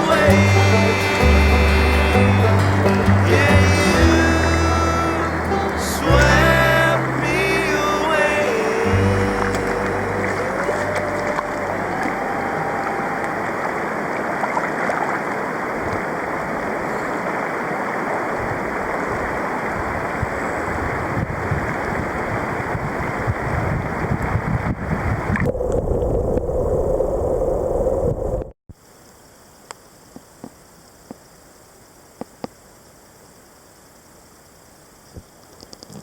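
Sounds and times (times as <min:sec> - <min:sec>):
stream water rushing: 0:00.0 - 0:21.0.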